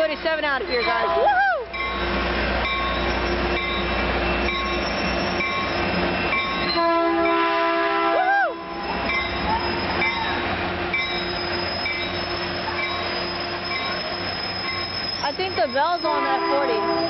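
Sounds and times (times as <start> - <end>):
locomotive bell ringing: 0.0 - 7.5, 8.6 - 17.0
train horn blast: 1.0 - 1.4, 6.7 - 9.0, 16.0 - 17.0.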